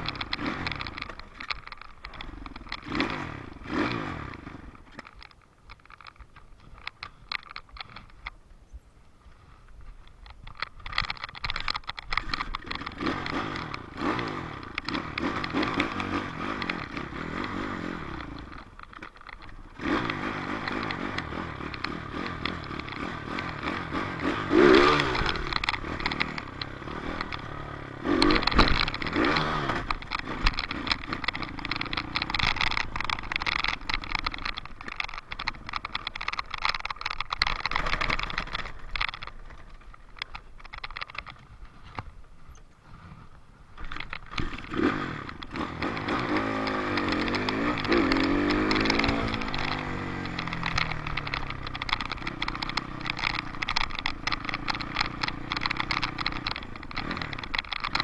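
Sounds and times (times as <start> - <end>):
dirt bike engine revving: 0.0 - 1.2, 2.1 - 4.8, 12.2 - 19.0, 19.7 - 36.0, 43.9 - 58.0.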